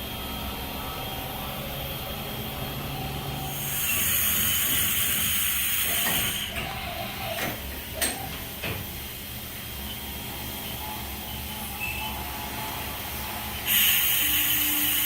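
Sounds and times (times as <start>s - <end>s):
milling machine humming: 0.0s - 9.1s
air hissing: 3.4s - 6.8s, 13.6s - 15.0s
mechanical clunks and knocks: 4.0s - 9.1s.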